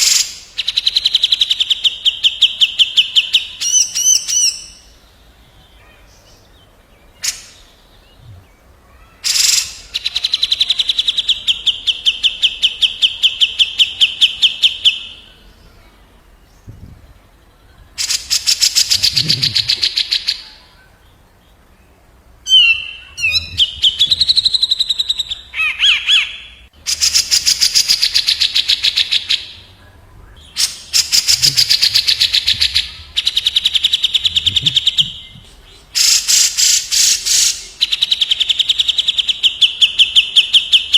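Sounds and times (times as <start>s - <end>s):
birds rattling trills: 30.4s - 40.9s.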